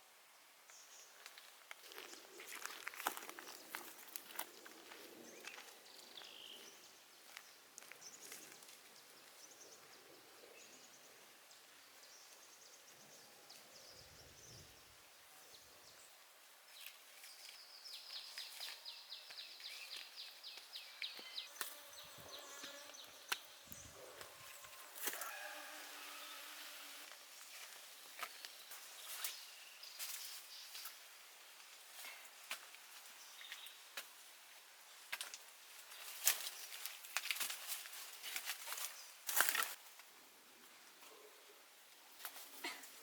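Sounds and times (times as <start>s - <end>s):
faint steady hiss: 0.0s - 43.0s
insect buzzing trill: 21.4s - 27.1s.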